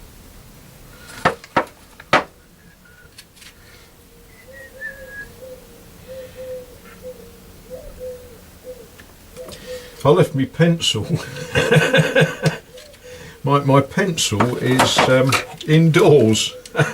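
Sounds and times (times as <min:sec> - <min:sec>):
sharp knocks: 0:01.2 - 0:02.4, 0:14.3 - 0:15.5
man whistling a slow tune: 0:04.3 - 0:05.4.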